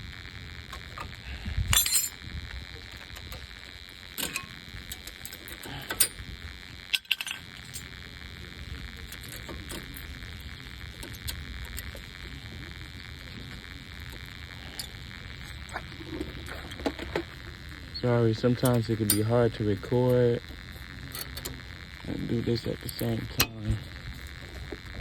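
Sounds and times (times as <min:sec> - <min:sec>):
metal tools clinking: 0:01.8 - 0:02.2, 0:06.9 - 0:07.8.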